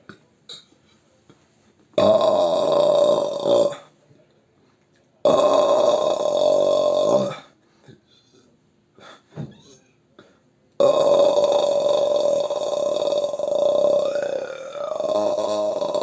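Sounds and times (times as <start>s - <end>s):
long loud belch: 2.0s - 3.9s, 5.2s - 7.5s, 10.8s - 16.0s.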